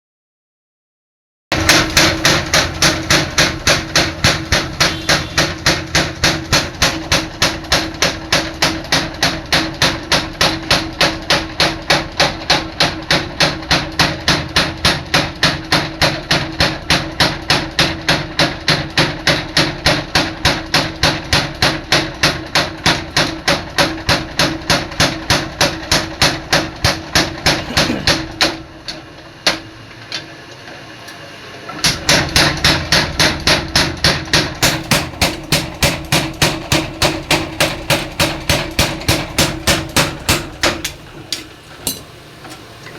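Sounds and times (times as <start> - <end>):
hammer blows on metal: 1.6 - 8.7.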